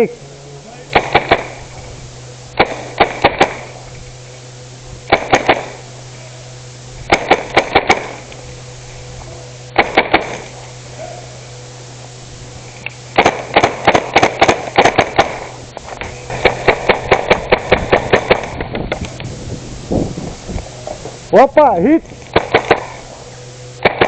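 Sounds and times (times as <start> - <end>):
airsoft gun firing bursts: 0.9 - 1.7, 2.6 - 3.8, 5.1 - 5.8, 7.0 - 8.2, 9.8 - 10.5, 13.2 - 15.5, 16.3 - 18.6, 22.3 - 23.0, 23.8 - 24.0.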